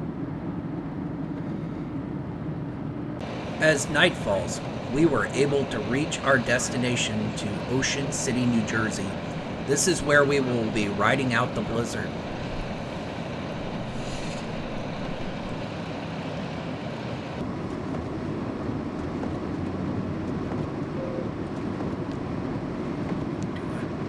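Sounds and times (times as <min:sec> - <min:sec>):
vehicle engine and tyre rumble: 0:09.2 - 0:24.0.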